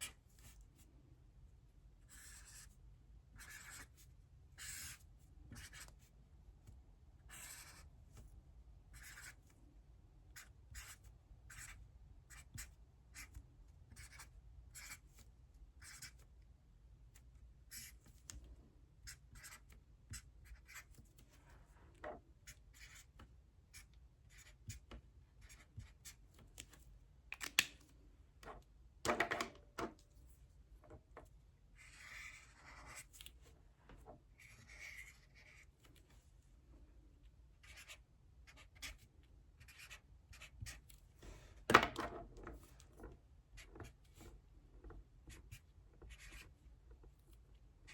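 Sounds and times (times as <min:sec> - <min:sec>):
pen scratching on paper: 0:02.1 - 0:02.7, 0:03.4 - 0:04.0, 0:04.6 - 0:05.0, 0:05.6 - 0:06.0, 0:07.3 - 0:07.9, 0:08.9 - 0:09.4, 0:10.4 - 0:15.1, 0:15.8 - 0:16.2, 0:17.7 - 0:18.0, 0:19.1 - 0:20.9, 0:22.5 - 0:23.1, 0:23.7 - 0:24.8, 0:25.4 - 0:26.2, 0:31.8 - 0:33.1, 0:34.4 - 0:35.7, 0:37.6 - 0:39.0, 0:39.6 - 0:40.9, 0:45.3 - 0:46.5.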